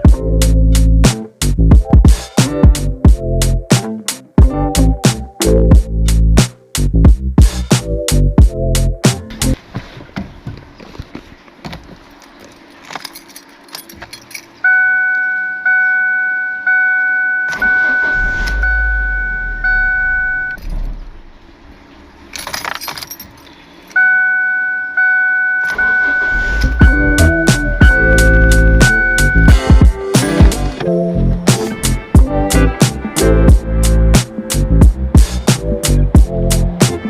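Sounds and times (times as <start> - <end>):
keys jangling: 12.2 - 14.6, 22.4 - 23.6
car warning chime dinging: 14.6 - 20.6, 24.0 - 29.7.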